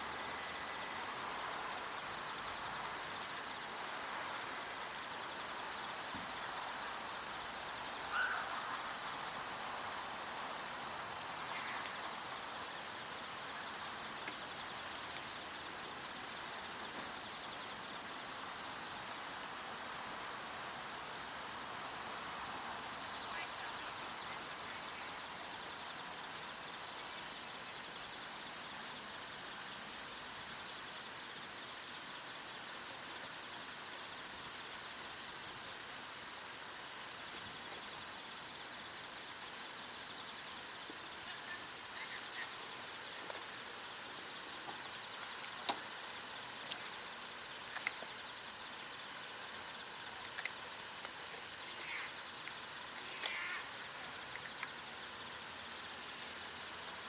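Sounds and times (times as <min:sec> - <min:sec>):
outdoor background hiss: 0:00.0 - 0:57.0
high chirps and clicks: 0:52.4 - 0:53.6.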